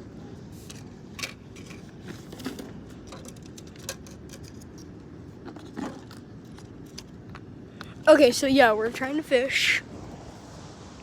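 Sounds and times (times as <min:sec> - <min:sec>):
steady outdoor hiss: 0:00.0 - 0:11.0
handling clicks and rustles: 0:00.5 - 0:07.9.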